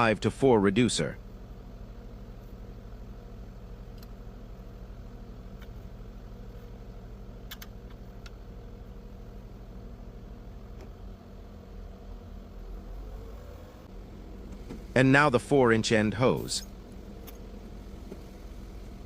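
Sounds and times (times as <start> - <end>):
diesel engine running: 11.4 - 19.0.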